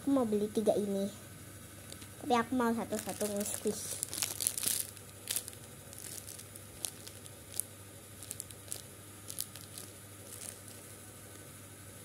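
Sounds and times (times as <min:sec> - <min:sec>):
plastic wrapping crinkling: 0:02.7 - 0:11.4.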